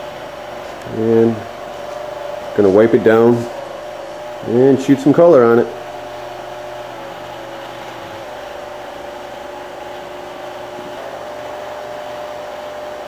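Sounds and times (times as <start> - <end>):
fan-like whirring: 0.0 - 13.0
mechanical hum: 0.0 - 13.0.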